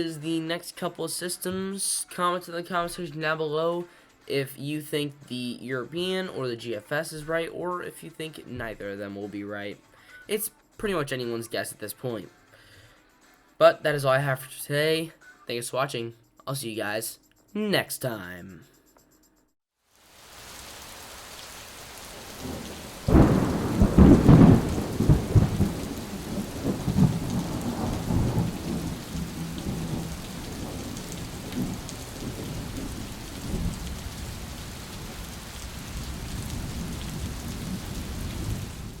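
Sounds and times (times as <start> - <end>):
steady rain: 19.9 - 39.0
thunder clap and rumble: 22.1 - 39.0.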